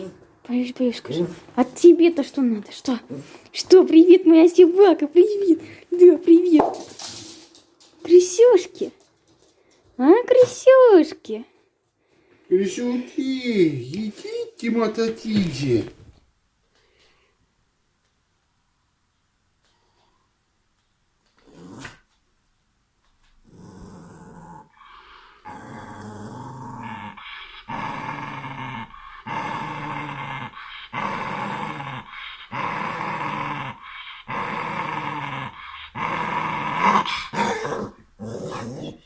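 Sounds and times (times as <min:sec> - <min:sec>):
dog growling: 0:21.4 - 0:22.1, 0:23.4 - 0:39.0.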